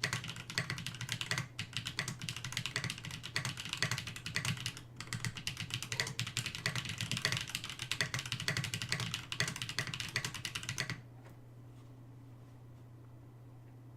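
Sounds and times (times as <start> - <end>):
mechanical keyboard typing: 0.0 - 11.0
faint low hum: 0.0 - 13.9.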